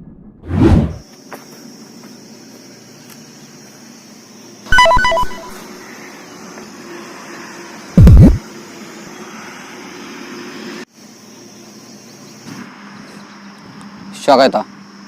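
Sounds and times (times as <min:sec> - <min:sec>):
electronic beeps: 0:04.7 - 0:05.6, 0:08.0 - 0:08.4.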